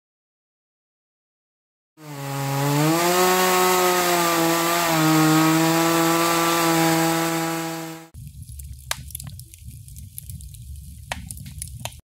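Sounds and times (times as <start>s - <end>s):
chainsaw cutting firewood: 2.0s - 8.2s.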